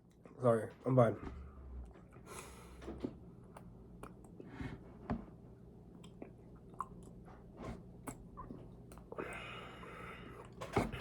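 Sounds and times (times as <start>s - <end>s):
person chewing food: 3.4s - 4.5s, 5.9s - 11.0s.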